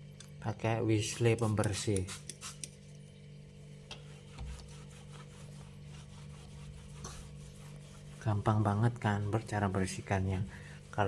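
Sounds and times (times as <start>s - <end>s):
steady low hum: 0.0s - 11.0s
cloth wiping a refrigerator: 4.0s - 11.0s.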